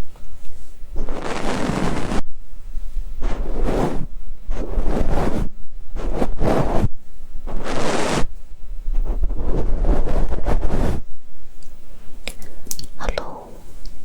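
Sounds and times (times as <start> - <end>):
brush swishing on microphone: 0.5 - 2.2, 3.2 - 8.3, 8.9 - 11.1.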